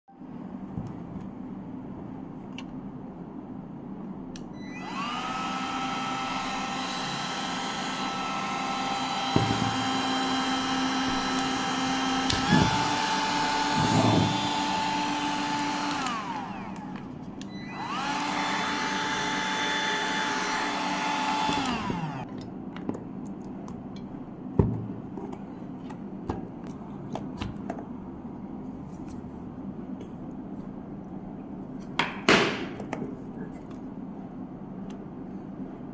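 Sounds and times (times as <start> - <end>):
hot air gun blower whining: 4.7 - 22.3.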